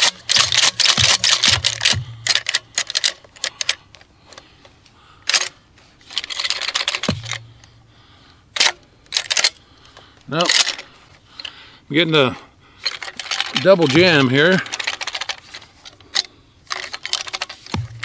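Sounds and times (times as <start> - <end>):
shotgun action clacking: 0.0 - 3.2.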